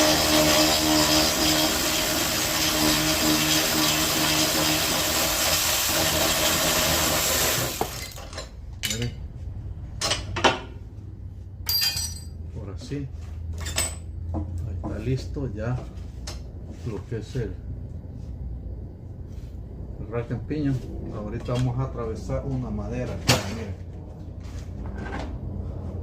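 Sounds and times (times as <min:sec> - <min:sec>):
metallic clinks: 0:11.6 - 0:12.4.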